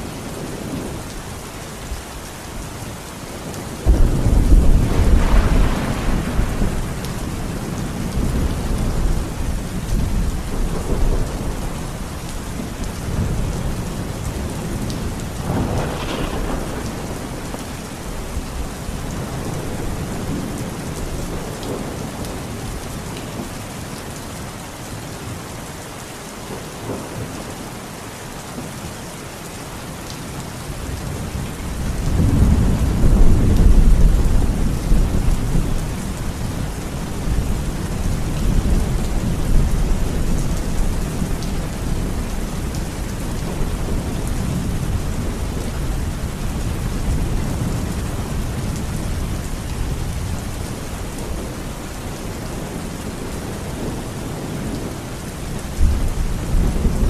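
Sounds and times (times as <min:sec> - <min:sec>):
heavy rain: 0:00.0 - 0:57.0
thunder rumbling: 0:03.4 - 0:22.8, 0:30.8 - 0:51.7, 0:55.7 - 0:57.0.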